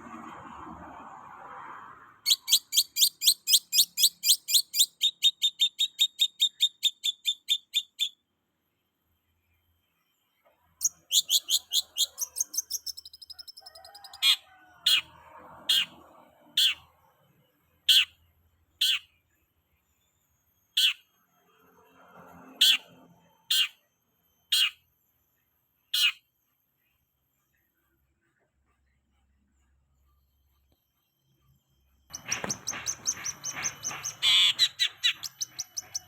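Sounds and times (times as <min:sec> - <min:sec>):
songbird chirping: 0:02.2 - 0:15.1, 0:32.1 - 0:36.0.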